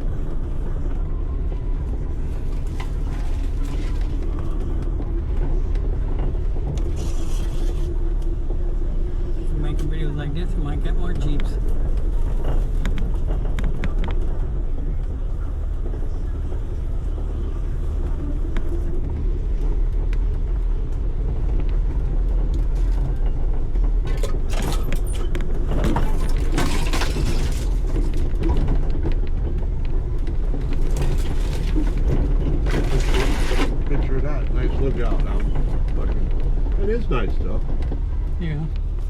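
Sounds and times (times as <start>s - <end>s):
vehicle engine rumble: 0.0s - 39.0s
sharp knocks and rattles: 23.9s - 29.7s, 30.3s - 33.9s.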